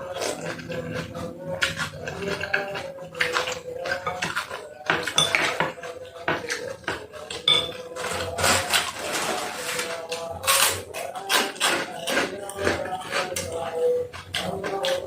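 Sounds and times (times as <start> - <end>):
spoon clinking against bowl: 2.4 - 8.0.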